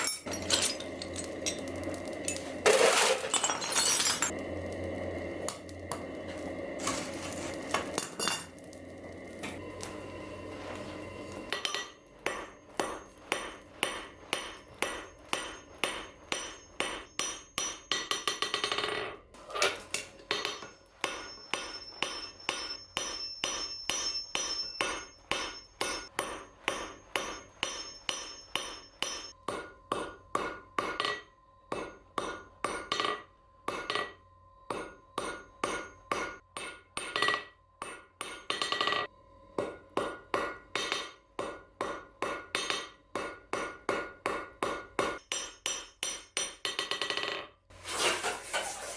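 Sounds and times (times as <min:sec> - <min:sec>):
anvil ringing: 0:00.0 - 0:04.4, 0:05.5 - 0:10.0, 0:10.7 - 0:31.2
hammer striking steel on anvil: 0:05.4 - 0:10.0, 0:10.6 - 0:47.4.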